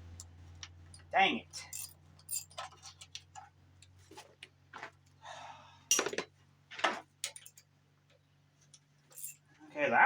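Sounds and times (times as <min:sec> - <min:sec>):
hand tools clinking on metal: 0:00.9 - 0:03.4, 0:09.1 - 0:09.5.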